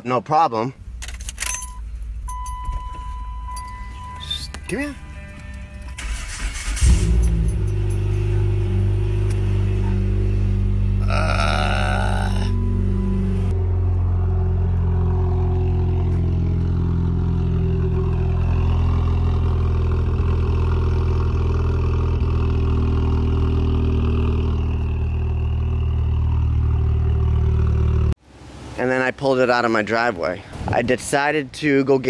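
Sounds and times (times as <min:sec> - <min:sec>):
car engine idling: 0:00.8 - 0:28.2.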